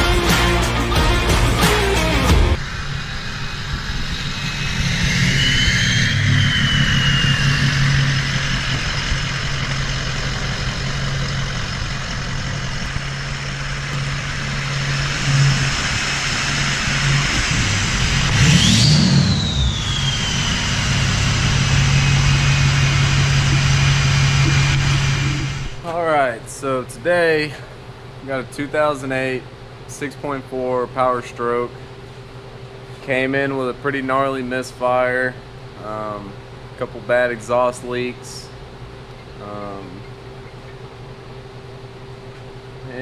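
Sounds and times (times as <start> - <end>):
diesel truck engine running: 0.0 - 2.6, 7.3 - 26.0
turbo whine: 0.0 - 43.0.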